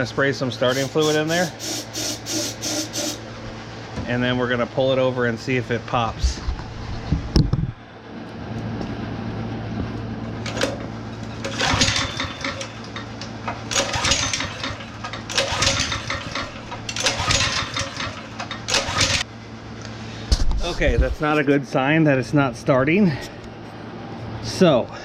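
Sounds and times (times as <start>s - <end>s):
recoil starter rasping crank: 11.4s - 19.2s.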